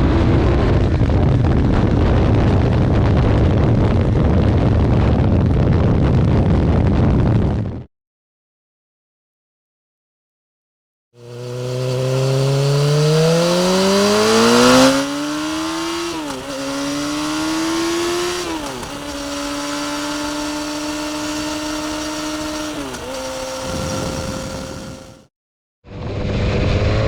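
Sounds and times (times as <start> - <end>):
motorcycle engine accelerating: 0.0 - 5.4, 11.2 - 25.3, 25.9 - 27.0
rush of noise: 25.9 - 27.0.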